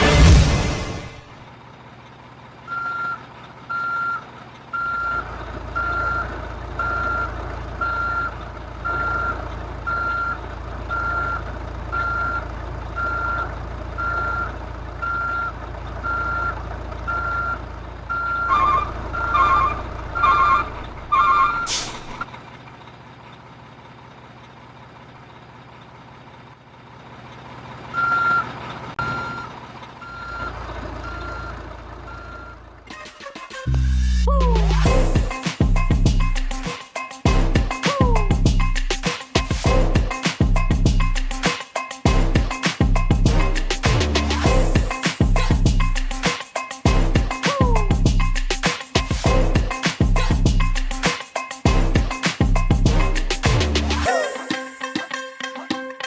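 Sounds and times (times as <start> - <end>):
reversing beeper: 2.7 - 22.2, 27.9 - 32.7.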